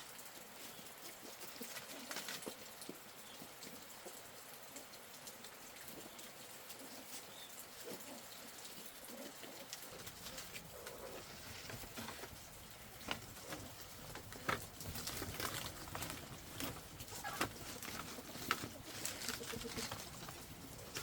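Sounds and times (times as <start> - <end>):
soft patter: 0.0 - 21.0
low bird calls: 6.0 - 21.0.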